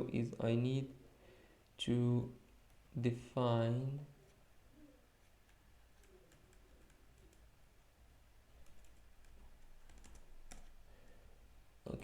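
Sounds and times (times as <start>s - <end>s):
faint keyboard typing: 4.2s - 7.9s, 8.5s - 11.4s.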